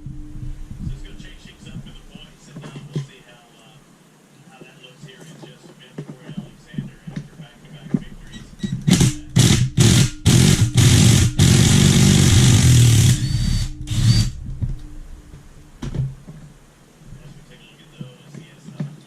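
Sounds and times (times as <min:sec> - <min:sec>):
handheld power tool bursts: 0:08.8 - 0:14.3.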